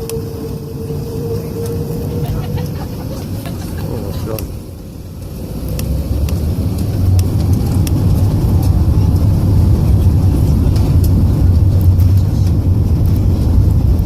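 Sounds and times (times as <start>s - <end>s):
jet engines at takeoff thrust: 0.0s - 14.0s.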